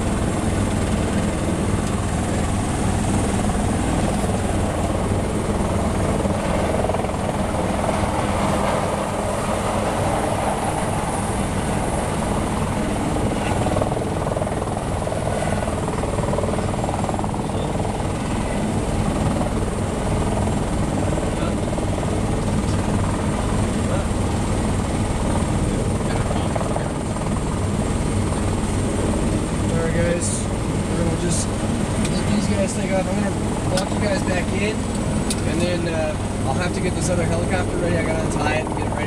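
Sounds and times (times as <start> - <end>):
helicopter rotor beat: 0.0 - 39.0
high turbine whine: 0.0 - 39.0.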